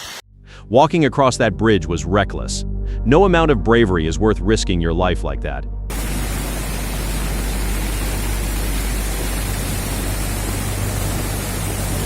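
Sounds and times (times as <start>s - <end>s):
low hum: 2.6s - 12.0s
loud rushing noise: 5.9s - 12.0s.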